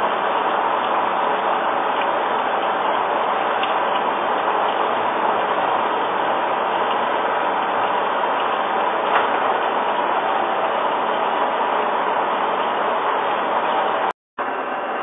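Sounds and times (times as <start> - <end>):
machine tool running: 0.0 - 15.0.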